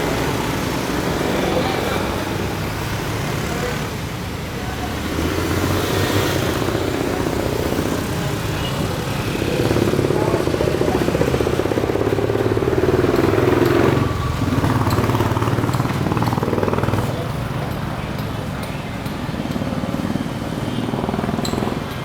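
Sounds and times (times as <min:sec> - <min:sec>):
engine running with pulsing beat: 0:05.0 - 0:22.0.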